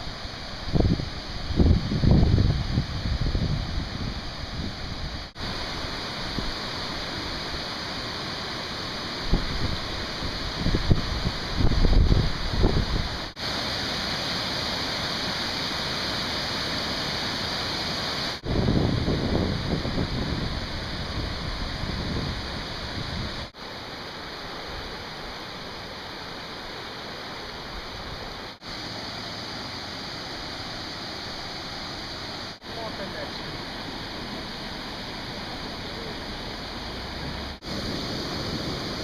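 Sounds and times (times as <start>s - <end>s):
heavy rain hissing: 0.0s - 39.0s
running storm water: 0.0s - 39.0s
wind buffeting microphone: 0.6s - 5.4s, 9.3s - 13.2s, 18.4s - 23.5s.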